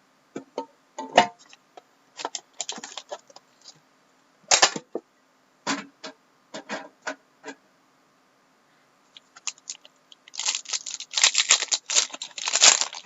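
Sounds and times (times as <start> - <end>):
packaging crinkling and rustling: 2.2 - 3.4, 9.2 - 13.0.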